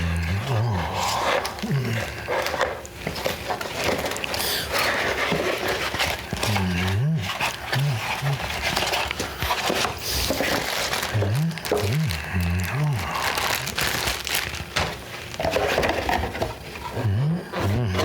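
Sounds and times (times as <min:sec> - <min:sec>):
man grunting: 0:00.0 - 0:02.1, 0:06.4 - 0:08.4, 0:11.1 - 0:13.8, 0:17.0 - 0:18.0.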